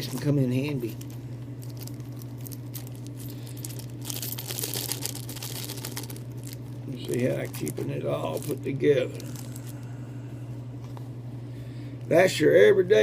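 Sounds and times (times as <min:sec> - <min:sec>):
plastic bags crinkling: 0:00.0 - 0:09.9
steady low hum: 0:00.0 - 0:13.0.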